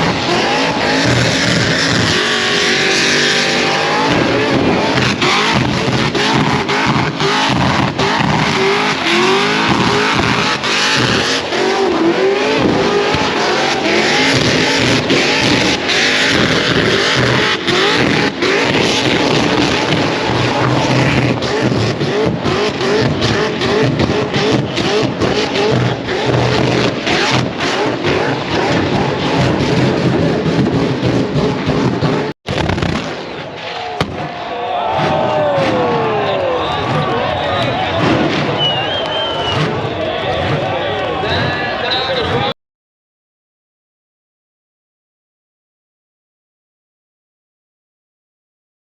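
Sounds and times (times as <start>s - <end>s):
car engine revving: 0.0s - 34.2s, 35.0s - 42.5s
exhaust crackling: 0.0s - 34.4s.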